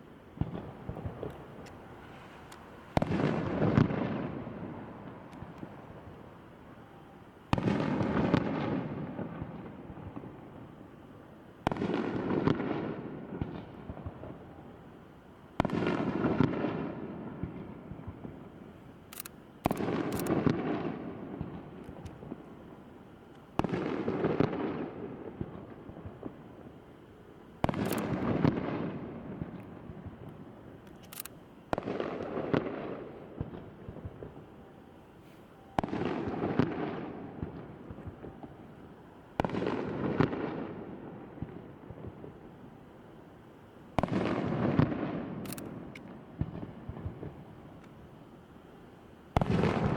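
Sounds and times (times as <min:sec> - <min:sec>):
firework crackle: 0:49.3 - 0:49.9
firework shells booming: 0:49.3 - 0:49.9.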